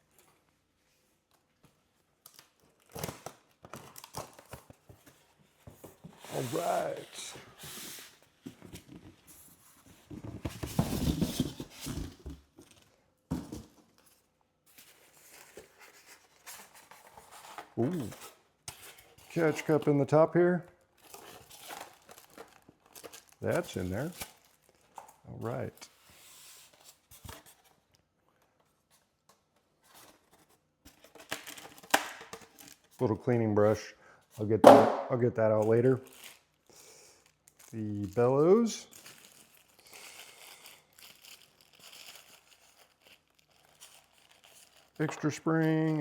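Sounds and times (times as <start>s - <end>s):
packaging rustling: 2.2s - 9.2s, 20.9s - 26.0s, 29.8s - 33.0s, 35.7s - 46.0s
cardboard box rustling and scraping: 7.6s - 12.4s
sharp knock: 34.6s - 35.1s.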